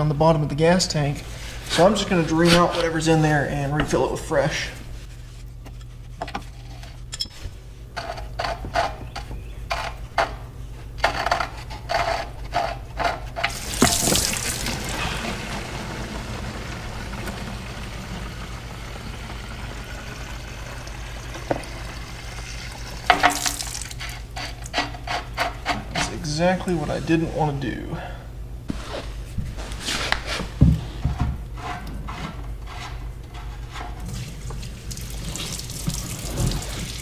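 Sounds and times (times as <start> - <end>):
gasoline pouring: 13.4 - 24.7, 34.0 - 37.0.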